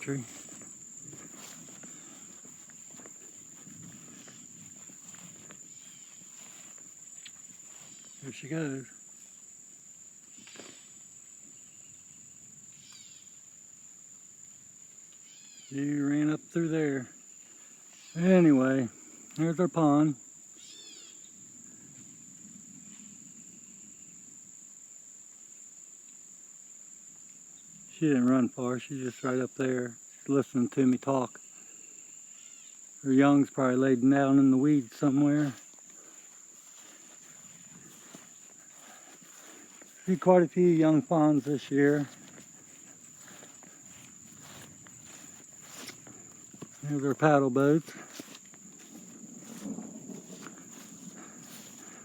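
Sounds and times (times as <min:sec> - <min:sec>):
soft footsteps: 0:00.0 - 0:08.2, 0:34.9 - 0:52.0
insects droning: 0:00.0 - 0:52.0
rustling: 0:35.4 - 0:52.0.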